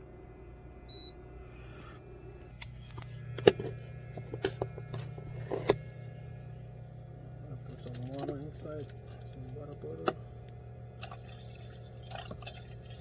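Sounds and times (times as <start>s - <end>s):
steady low hum: 0.0s - 13.0s
short electronic beep: 0.9s - 1.2s.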